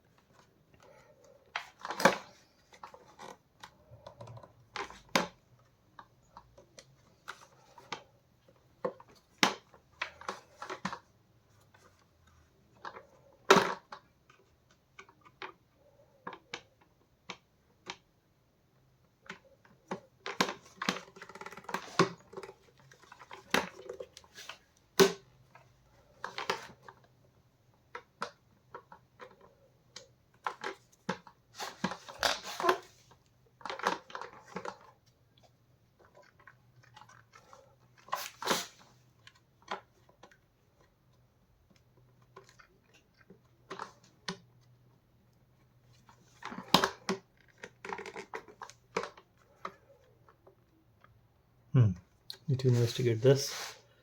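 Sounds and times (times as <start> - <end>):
plastic parts clicking and knocking: 0.0 - 51.3
plastic scraping rustles: 30.3 - 35.1.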